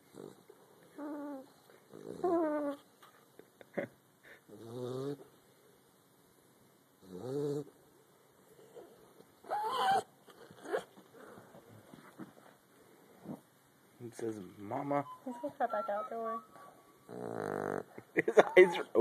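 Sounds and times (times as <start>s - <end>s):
sleeping pet snoring and moaning: 0.1s - 2.8s, 4.5s - 5.3s, 7.0s - 7.8s, 17.1s - 18.0s.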